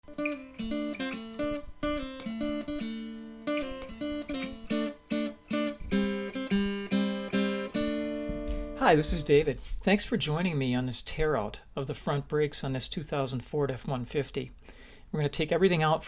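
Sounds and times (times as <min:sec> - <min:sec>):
acoustic guitar picking a melody: 0:00.0 - 0:09.7
strummed guitar chords: 0:00.1 - 0:09.5.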